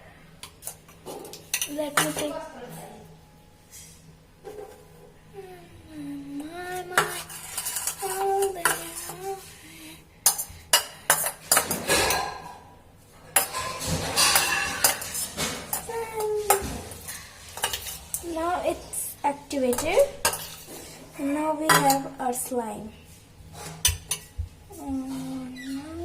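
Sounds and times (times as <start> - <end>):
spoon scraping a bowl: 7.0 - 9.4, 13.4 - 18.2, 19.7 - 21.0.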